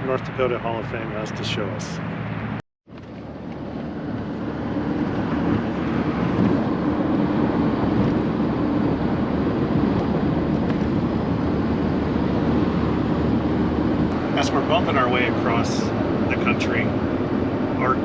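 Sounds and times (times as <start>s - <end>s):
truck engine and road noise: 0.0s - 18.0s.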